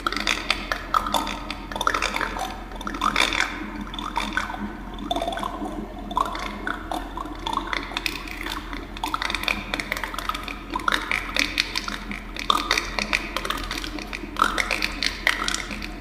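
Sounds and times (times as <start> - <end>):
liquid gurgling and bubbling: 0.0 - 16.0.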